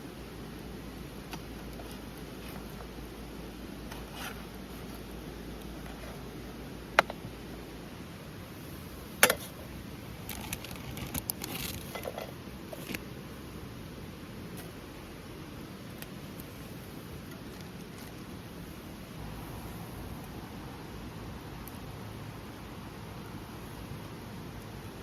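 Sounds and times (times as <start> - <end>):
steady low background noise: 0.0 - 25.0
small clicks and rustles: 1.2 - 3.0, 9.2 - 13.1, 17.2 - 18.4.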